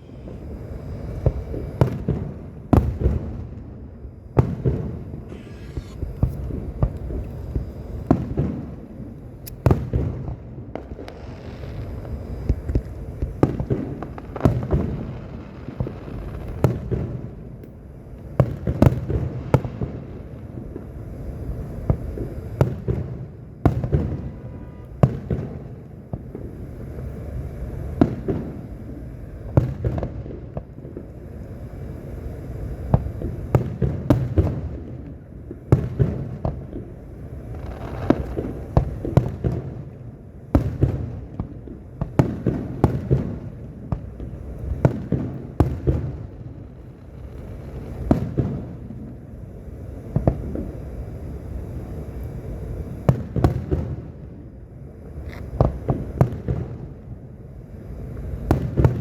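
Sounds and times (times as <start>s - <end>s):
fireworks bursting with loud bangs: 0.0s - 59.0s.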